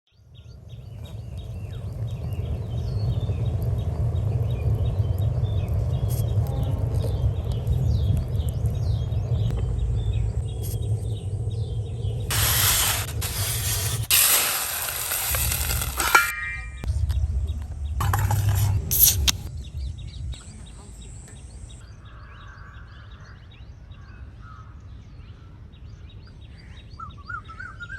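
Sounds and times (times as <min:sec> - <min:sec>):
small birds chirping: 0:00.2 - 0:27.9
steady low rumble: 0:00.3 - 0:22.0
loud rushing hiss: 0:12.2 - 0:16.3.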